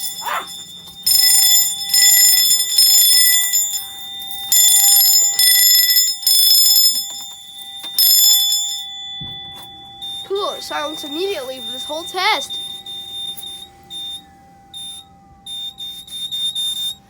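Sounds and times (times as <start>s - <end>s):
fire alarm high-pitched blasts: 0.0s - 17.0s.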